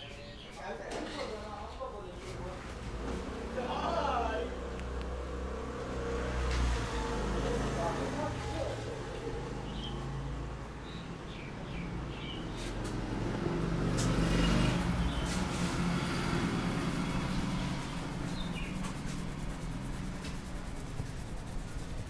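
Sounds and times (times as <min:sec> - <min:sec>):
vehicle engine rumble: 0:01.0 - 0:22.0
bird chirps: 0:17.3 - 0:18.8.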